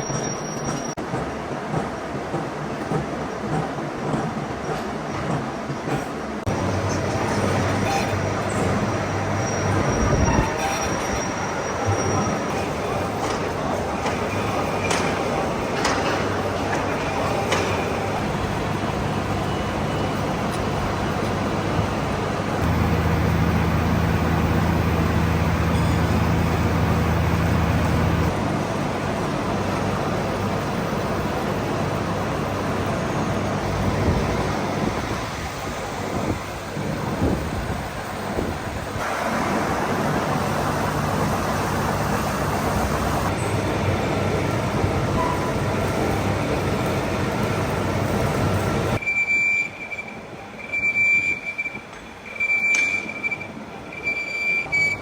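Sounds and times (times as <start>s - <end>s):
metalworking machinery running: 6.5s - 38.2s.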